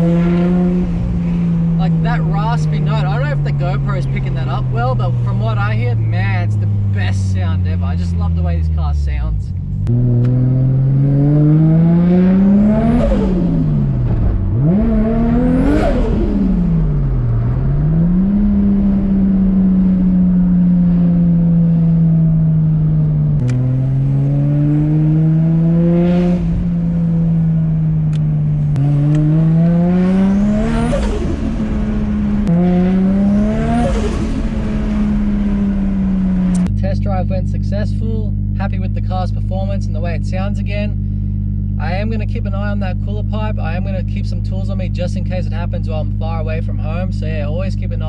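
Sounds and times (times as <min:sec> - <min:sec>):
turbocharged car engine revving: 0:00.0 - 0:48.0.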